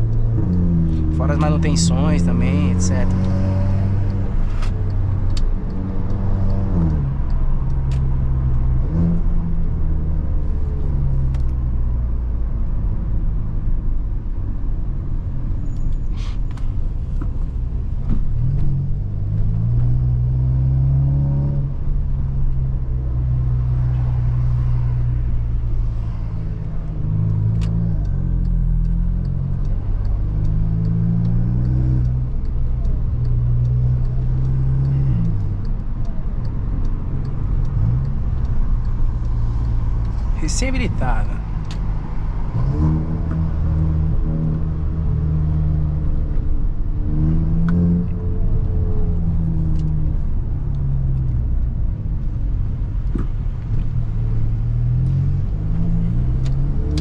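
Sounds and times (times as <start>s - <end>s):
turbocharged car engine running: 0.0s - 3.4s.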